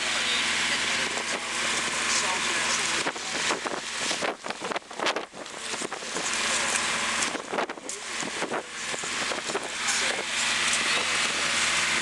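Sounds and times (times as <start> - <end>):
boat engine running: 0.0 - 12.0
faint voices: 0.0 - 12.0
wind noise: 3.0 - 6.3, 7.2 - 10.3.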